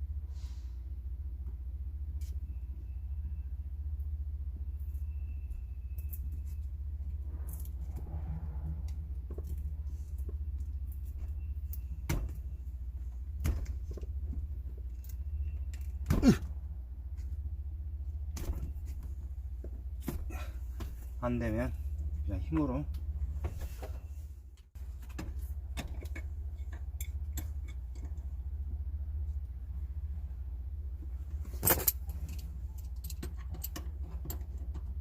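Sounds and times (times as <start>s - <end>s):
tools clanking and knocking: 25.0s - 28.3s, 31.5s - 35.0s.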